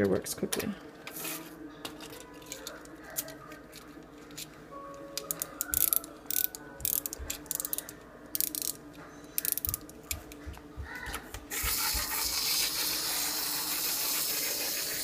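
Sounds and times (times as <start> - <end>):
wind-up key ratchet clicks: 5.2 - 8.8, 9.4 - 10.2
clockwork motor whirring: 11.5 - 15.0.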